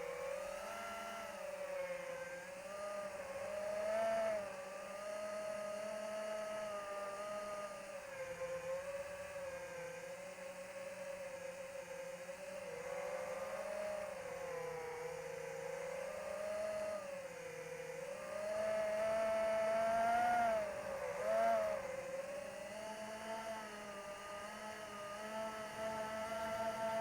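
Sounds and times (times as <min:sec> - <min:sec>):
model plane motor whining: 0:13.6 - 0:27.0.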